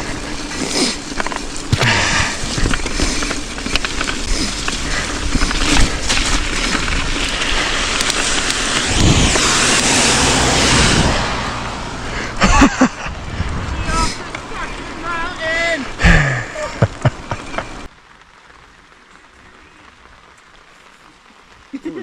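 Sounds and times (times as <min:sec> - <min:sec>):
bike tyres crunching over gravel: 0:00.0 - 0:22.0
wind on microphone: 0:02.0 - 0:11.7, 0:12.5 - 0:15.0.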